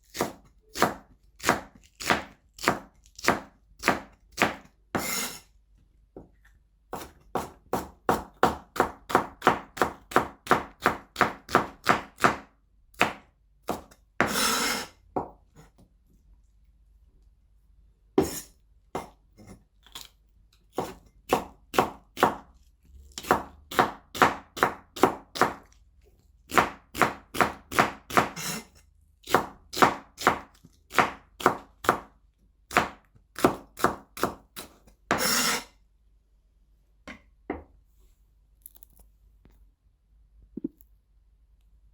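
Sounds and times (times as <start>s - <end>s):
knife chopping on a board: 0.1s - 5.4s, 6.9s - 15.8s, 18.2s - 19.6s, 20.7s - 22.5s, 23.1s - 25.7s, 26.5s - 28.6s, 29.2s - 32.1s, 32.7s - 35.6s.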